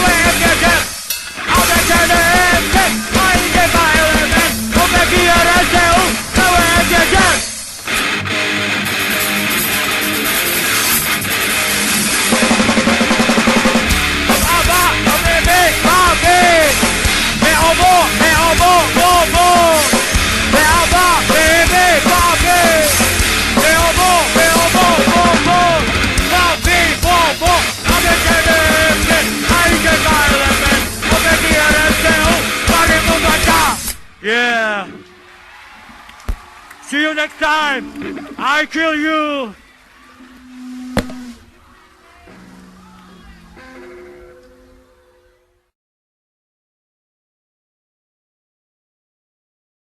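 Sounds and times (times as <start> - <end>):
shouted vocals: 0.0 - 7.5, 14.4 - 37.8, 41.6 - 43.7
drum kit: 0.0 - 34.2
distorted electric guitars: 0.0 - 35.4, 37.4 - 38.8, 39.6 - 45.5
punk rock band playing: 0.0 - 35.4.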